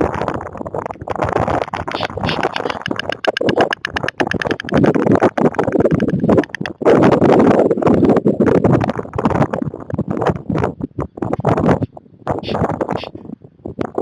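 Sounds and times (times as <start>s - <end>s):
stork clattering its bill: 0.8s - 6.8s.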